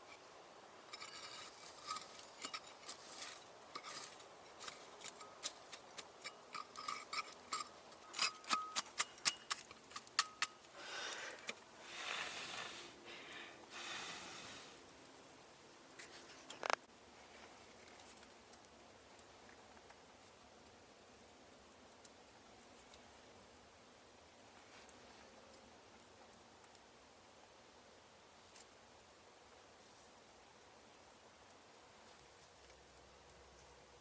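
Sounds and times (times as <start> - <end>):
rustling scrapes: 0.9 - 9.0
light metallic ring: 6.2 - 9.6.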